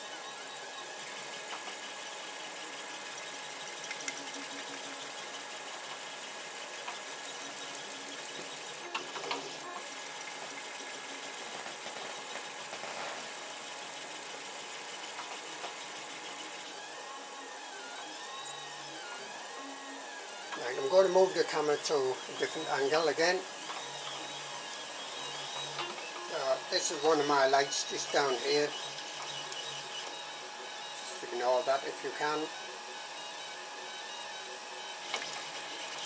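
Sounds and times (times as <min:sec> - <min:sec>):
stepper motors humming and whining: 0:00.0 - 0:36.0.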